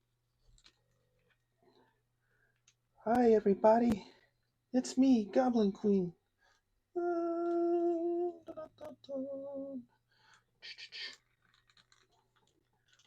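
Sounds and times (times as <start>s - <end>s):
man speaking a word: 4.8s - 6.2s, 7.0s - 9.8s
man humming: 6.9s - 9.9s.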